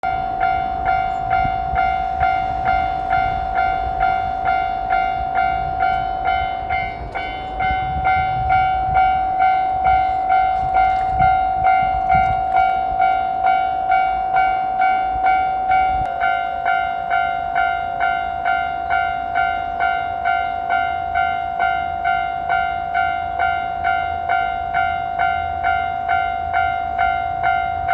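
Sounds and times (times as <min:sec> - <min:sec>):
railroad crossing bell ringing: 0:00.0 - 0:27.9
low rumble: 0:00.2 - 0:13.1.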